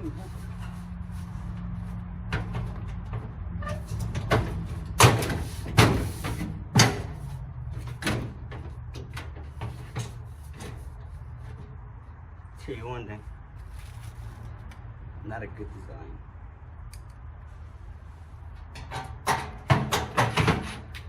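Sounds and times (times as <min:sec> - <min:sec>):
knocks and clanks of metal parts: 0:02.2 - 0:10.8, 0:18.6 - 0:21.0.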